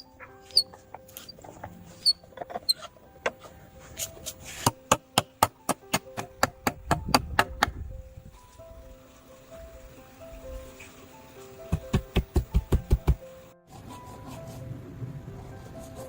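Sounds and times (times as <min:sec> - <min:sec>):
faint steady musical tones: 0:00.0 - 0:16.0
hand tool striking wood: 0:04.5 - 0:07.8, 0:11.7 - 0:13.2.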